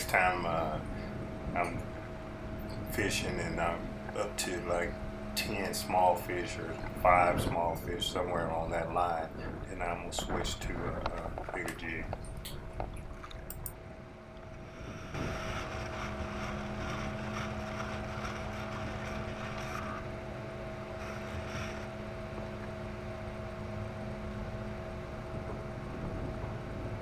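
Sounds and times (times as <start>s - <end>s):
electric anchor motor humming: 0.0s - 27.0s.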